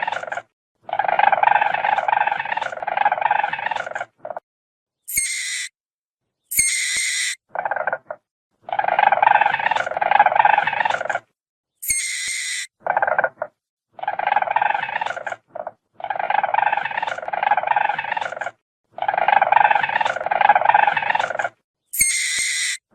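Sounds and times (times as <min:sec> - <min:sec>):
weasel chattering trills: 0:00.0 - 0:04.1, 0:06.5 - 0:11.2, 0:16.0 - 0:22.8
weasel squealing: 0:05.1 - 0:05.7, 0:06.5 - 0:08.0, 0:11.8 - 0:15.4, 0:19.0 - 0:22.8.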